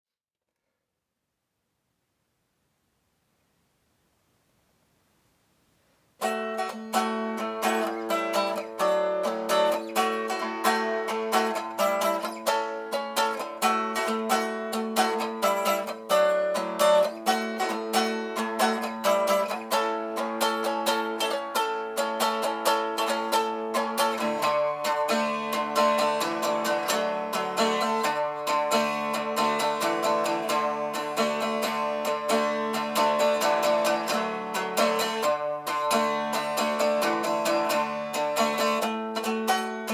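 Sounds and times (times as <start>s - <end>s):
cigar box guitar blues: 6.2s - 39.9s.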